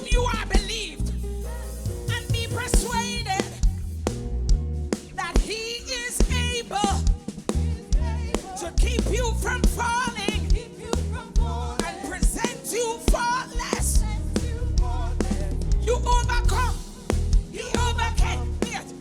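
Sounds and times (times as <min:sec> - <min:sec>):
people singing: 0:00.0 - 0:03.6, 0:05.4 - 0:19.0
bass: 0:00.0 - 0:19.0
gospel band playing: 0:00.0 - 0:19.0
drum beat: 0:01.8 - 0:19.0.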